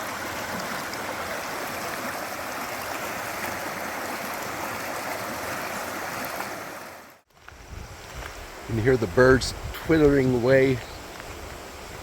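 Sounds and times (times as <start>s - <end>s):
brook flowing over rocks: 0.0s - 7.2s.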